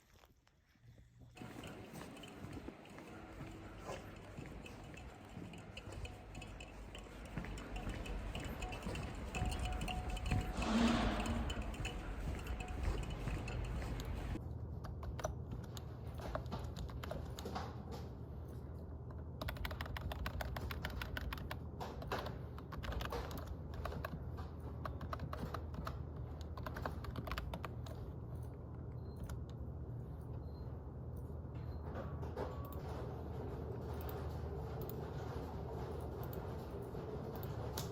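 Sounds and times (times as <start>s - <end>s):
low steady hum: 0.2s - 16.3s.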